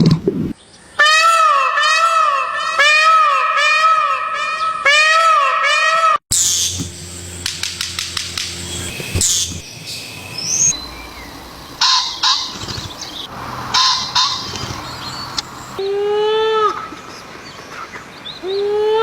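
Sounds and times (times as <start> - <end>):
bird clicking and calling: 7.4 - 15.8.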